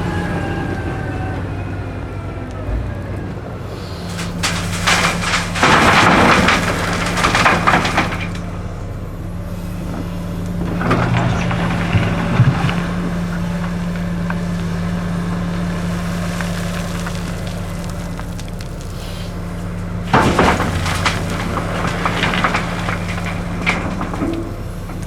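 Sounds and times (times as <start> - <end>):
gravel crunching and rattling: 0.0 - 25.0
heavy diesel engine humming: 0.0 - 25.0.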